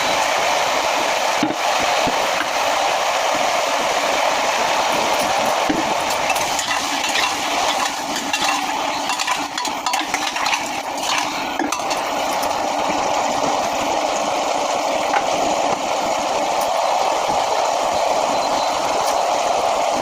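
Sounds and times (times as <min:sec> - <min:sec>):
steady hiss: 0:00.0 - 0:20.0
spoon stirring in metal pot: 0:06.1 - 0:12.5.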